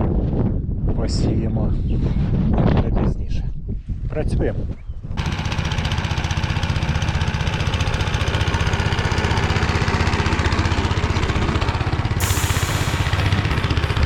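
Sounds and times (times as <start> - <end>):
tractor engine running: 5.2 - 14.0.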